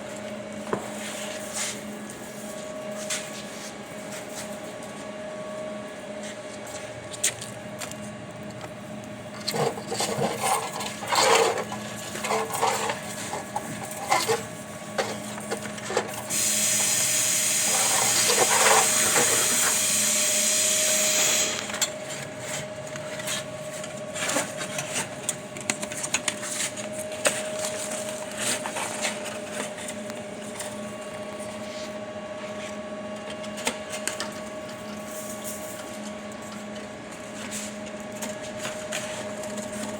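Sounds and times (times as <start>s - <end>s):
loud hiss: 16.3s - 18.2s.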